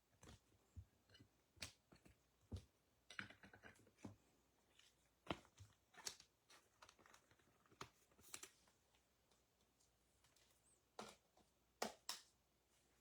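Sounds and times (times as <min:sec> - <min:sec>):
faint clicks and taps of cards: 0:04.0 - 0:08.7.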